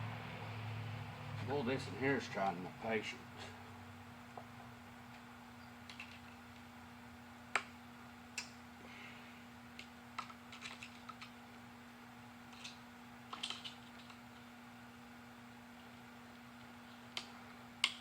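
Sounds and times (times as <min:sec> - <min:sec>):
steady low hum: 0:00.0 - 0:18.0
small metal parts clicking: 0:12.5 - 0:14.2.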